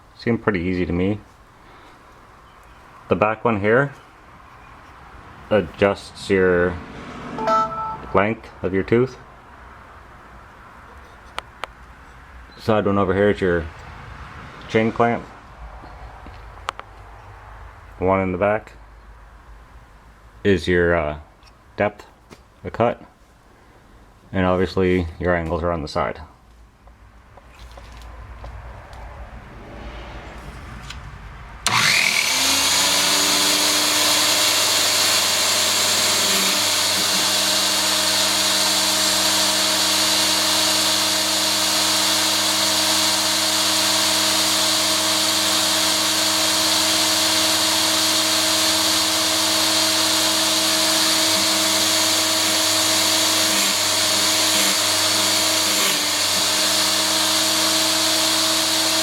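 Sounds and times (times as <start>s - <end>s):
chainsaw sharpener grinding motor: 31.6s - 59.0s.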